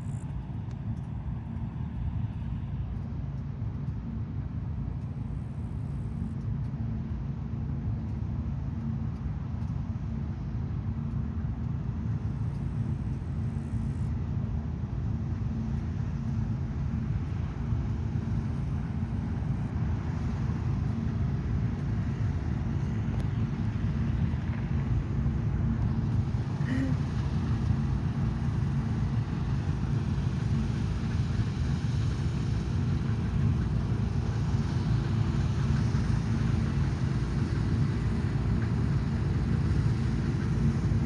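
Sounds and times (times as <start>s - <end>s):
combine harvester drone: 0.0s - 41.0s.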